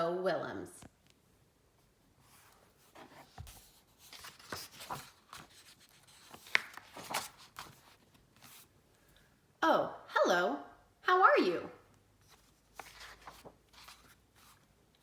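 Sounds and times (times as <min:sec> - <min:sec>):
book pages rustling: 0:02.2 - 0:08.7, 0:12.2 - 0:15.0.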